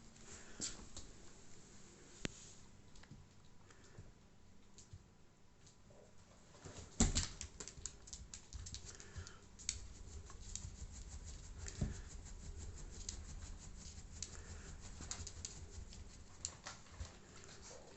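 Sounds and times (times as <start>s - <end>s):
cat clicking and tapping: 7.0s - 17.5s.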